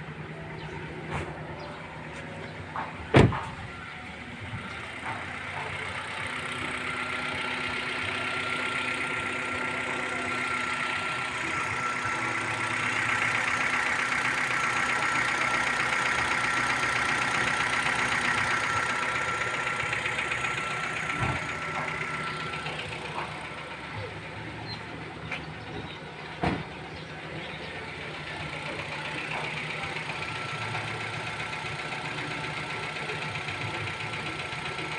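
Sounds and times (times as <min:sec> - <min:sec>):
car engine running: 0:00.0 - 0:34.9.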